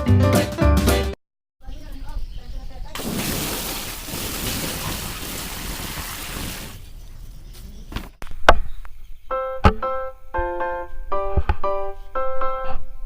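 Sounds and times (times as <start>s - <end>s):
water rushing and splashing: 3.0s - 6.8s
keyboard music notes: 9.3s - 13.0s.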